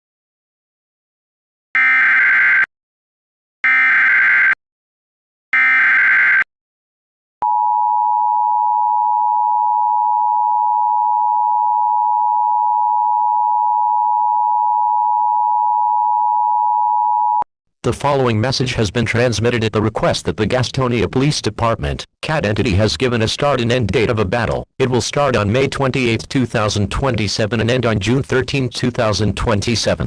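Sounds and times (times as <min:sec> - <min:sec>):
two-tone alert signal: 0:05.6 - 0:06.4.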